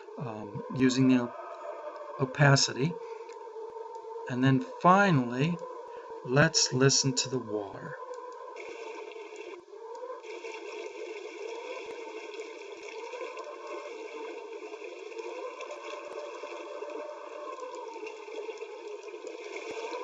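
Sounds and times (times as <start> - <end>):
running water stream: 4.6 - 20.0.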